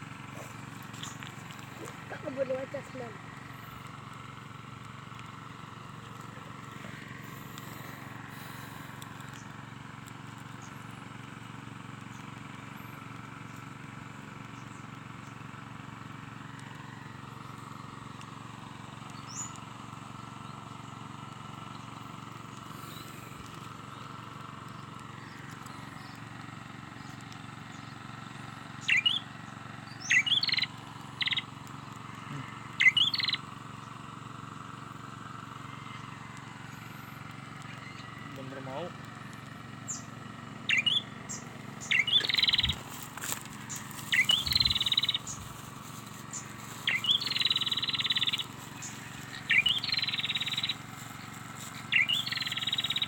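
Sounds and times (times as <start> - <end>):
outdoor background noise: 0.0 - 53.0
bird chirping: 0.3 - 3.1, 19.1 - 19.6, 28.8 - 31.5, 32.3 - 33.4, 40.7 - 53.0.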